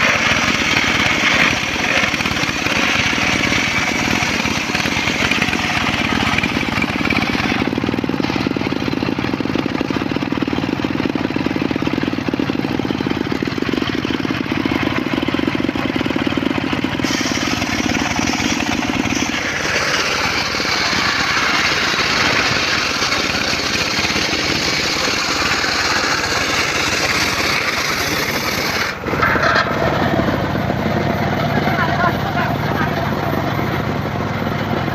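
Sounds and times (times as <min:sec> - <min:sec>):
circular saw cutting wood: 0:00.0 - 0:09.5, 0:16.9 - 0:30.6.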